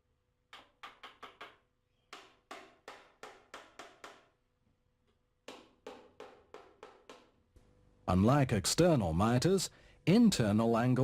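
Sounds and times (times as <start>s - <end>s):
hammer tapping pins into wood: 0.5s - 4.4s, 5.4s - 7.4s.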